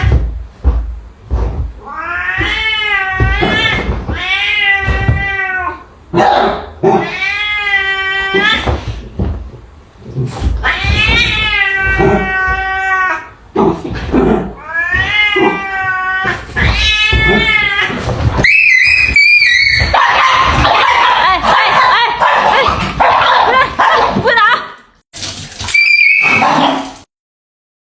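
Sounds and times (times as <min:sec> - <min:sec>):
cat yowling: 0:14.6 - 0:20.8, 0:25.7 - 0:26.9.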